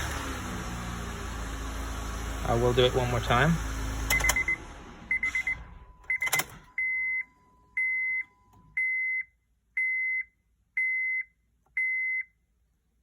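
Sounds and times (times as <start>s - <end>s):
dashboard warning chime beeps: 4.1s - 12.4s.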